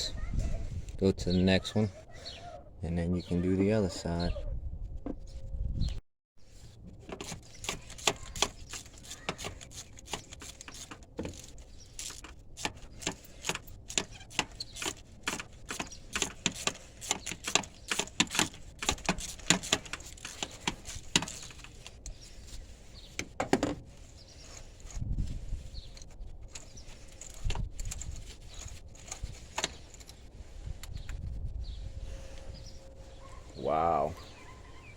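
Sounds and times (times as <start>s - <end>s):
hand tools clicking on engine: 7.1s - 22.2s.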